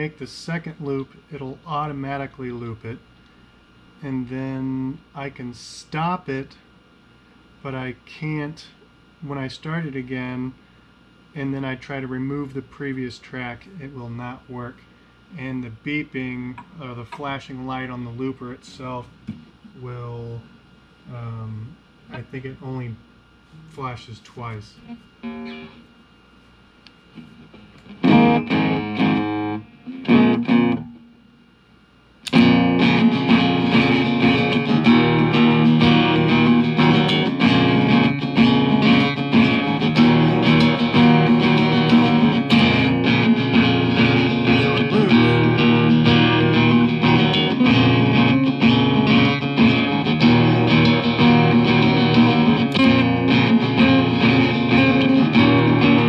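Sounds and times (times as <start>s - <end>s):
guitar playing: 24.9s - 25.8s, 27.2s - 31.0s, 32.3s - 56.0s.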